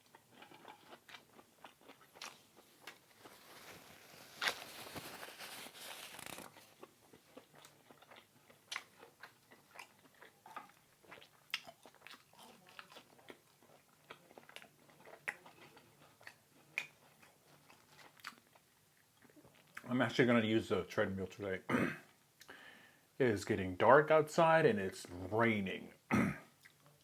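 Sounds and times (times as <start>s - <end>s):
person chewing food: 0.0s - 19.9s, 26.4s - 27.0s.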